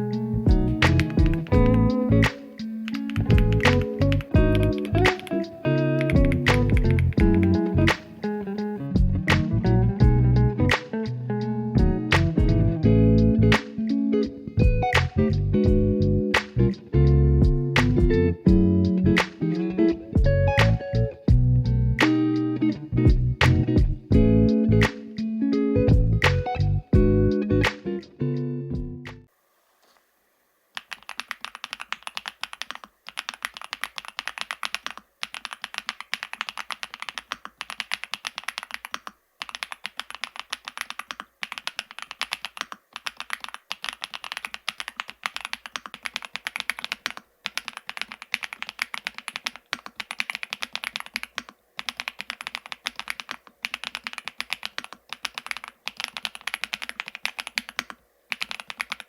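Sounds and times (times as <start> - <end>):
typing on mechanical keyboard: 0.8 - 8.1, 30.8 - 59.0.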